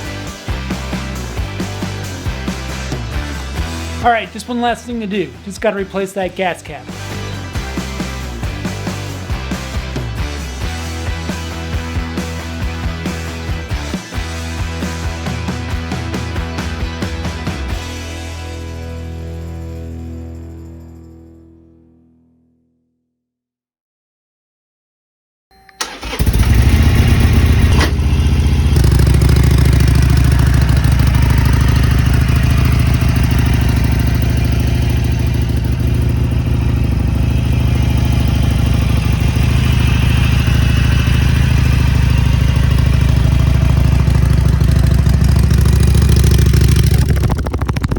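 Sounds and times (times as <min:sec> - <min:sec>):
motorcycle engine starting and idling: 0:25.8 - 0:47.9.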